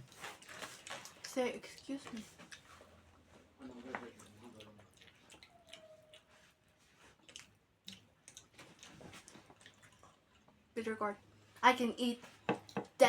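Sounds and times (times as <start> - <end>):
chewing clicks and smacks: 4.0 - 6.4, 7.1 - 10.6.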